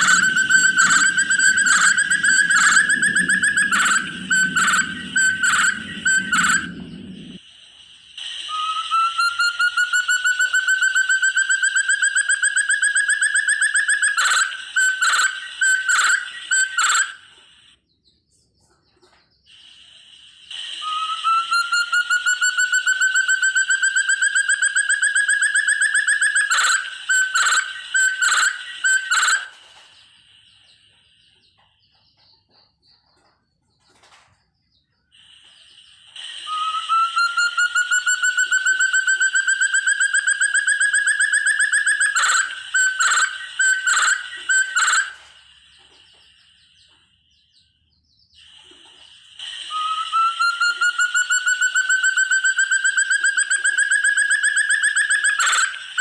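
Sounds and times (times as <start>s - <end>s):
partridge whistled calls: 0.0s - 7.4s, 8.1s - 17.8s, 18.9s - 34.1s, 34.8s - 56.0s.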